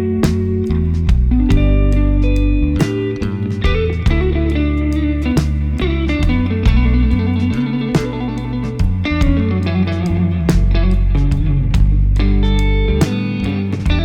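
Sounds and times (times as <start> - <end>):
live band playing: 0.0 - 12.4, 13.0 - 14.0
electric guitar: 0.0 - 14.0.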